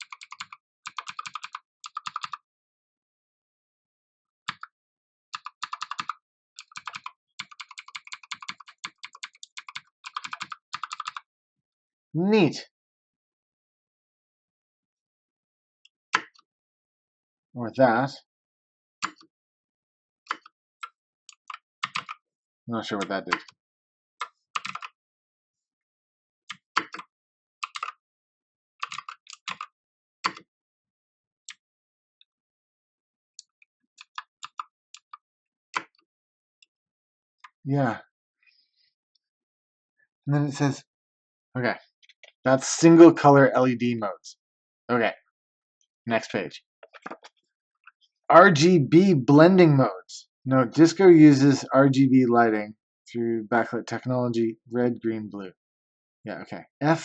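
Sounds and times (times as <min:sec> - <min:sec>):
mechanical keyboard typing: 0:00.0 - 0:02.4, 0:05.4 - 0:11.2, 0:21.4 - 0:22.2, 0:24.6 - 0:24.9, 0:26.5 - 0:28.0, 0:28.8 - 0:29.7, 0:34.0 - 0:35.1.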